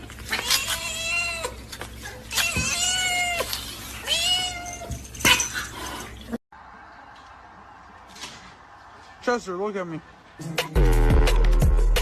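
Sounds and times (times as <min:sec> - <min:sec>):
cat meowing: 0:02.3 - 0:04.9.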